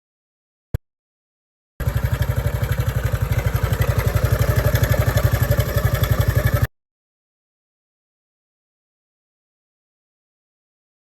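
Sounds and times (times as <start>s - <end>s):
motorcycle engine idling: 1.8s - 6.7s.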